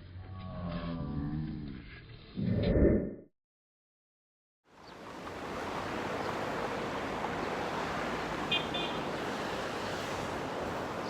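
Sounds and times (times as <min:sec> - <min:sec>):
river rushing: 0:04.7 - 0:11.0.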